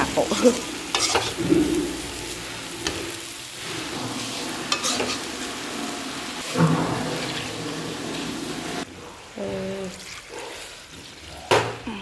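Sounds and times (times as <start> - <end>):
vegetables sizzling in oil: 0.0 - 11.6
scraping against pan: 0.2 - 8.8.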